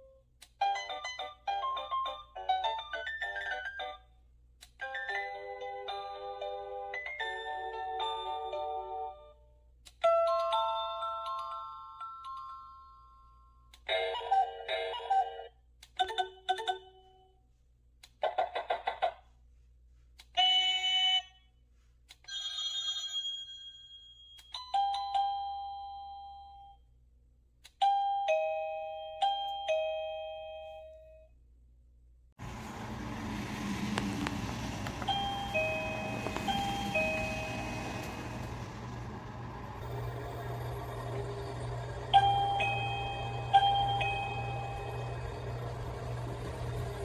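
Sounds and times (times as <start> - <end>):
electronic doorbell chime tunes: 10.0 - 17.2, 20.4 - 21.4, 22.3 - 26.8, 27.8 - 31.3, 35.0 - 38.3, 42.1 - 45.7.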